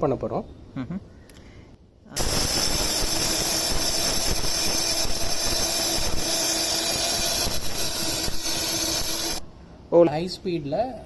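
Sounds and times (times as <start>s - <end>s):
flour grinder whirring: 2.2s - 9.5s
motor hum: 2.2s - 9.5s.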